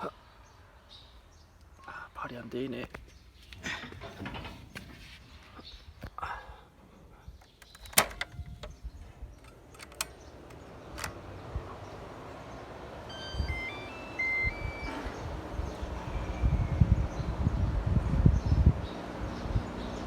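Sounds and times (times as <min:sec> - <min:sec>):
sharp clicks: 0:07.4 - 0:11.3
ventilation fan whoosh: 0:09.1 - 0:20.0
electronic beeps: 0:13.1 - 0:15.1.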